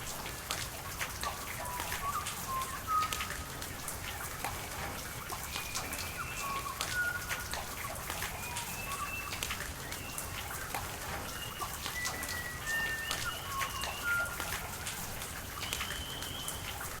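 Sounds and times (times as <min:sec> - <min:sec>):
rain with drips and splashes: 0:00.0 - 0:17.0
birds whistling: 0:05.5 - 0:10.7, 0:11.3 - 0:15.0, 0:15.6 - 0:16.8.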